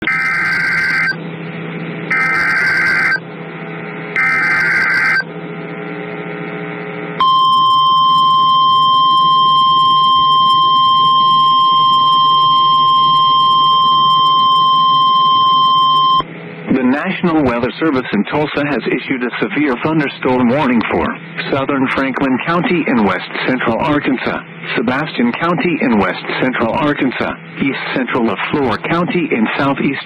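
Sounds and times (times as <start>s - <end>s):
screeching data bursts: 0.0s - 1.2s, 2.1s - 3.2s, 4.2s - 5.2s
steady warning alarm tone: 0.0s - 1.2s, 2.1s - 3.2s, 4.2s - 5.2s, 7.2s - 16.2s.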